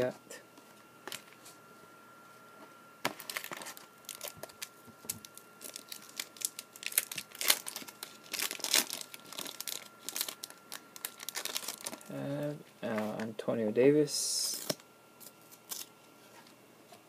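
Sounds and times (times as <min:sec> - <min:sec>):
foil wrapper crinkling: 0:03.1 - 0:12.1, 0:14.5 - 0:15.9.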